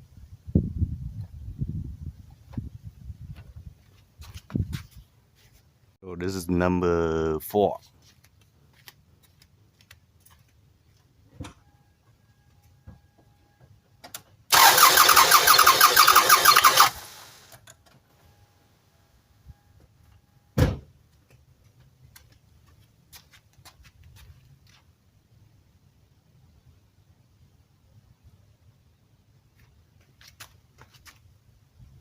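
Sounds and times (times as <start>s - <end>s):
starter cranking engine: 14.5s - 17.6s
thump: 20.6s - 20.9s.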